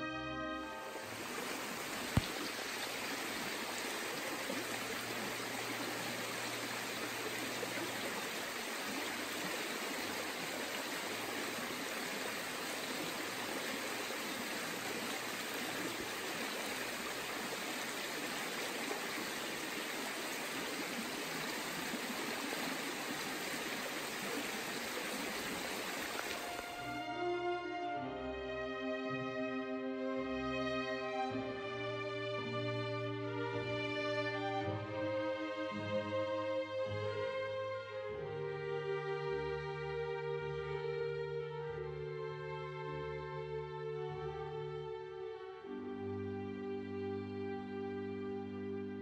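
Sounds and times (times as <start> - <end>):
stream flowing water: 0.6 - 27.2.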